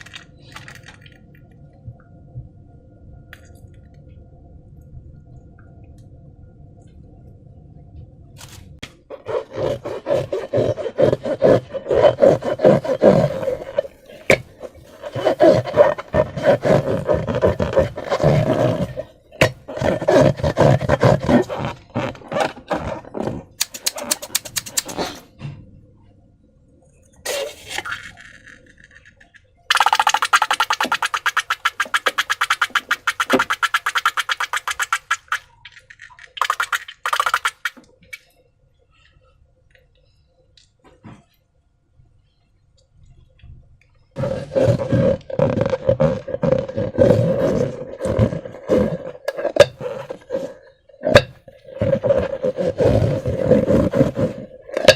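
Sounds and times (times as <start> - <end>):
balloon rubber squeaking: 9.1 - 25.2, 29.7 - 35.4, 36.4 - 37.8, 44.2 - 54.9.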